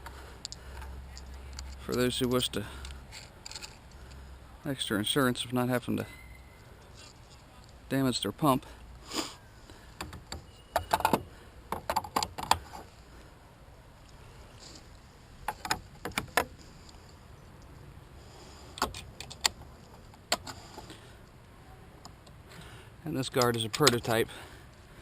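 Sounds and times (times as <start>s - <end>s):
metal parts clinking and rattling: 3.1s - 4.0s.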